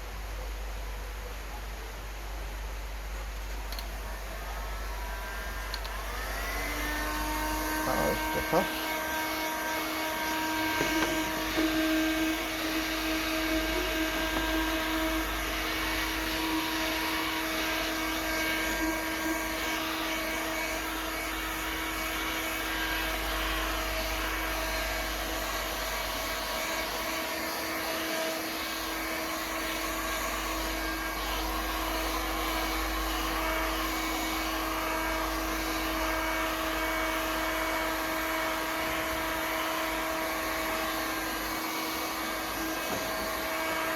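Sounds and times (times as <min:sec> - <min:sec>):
heat gun fan blowing: 0:03.4 - 0:43.9.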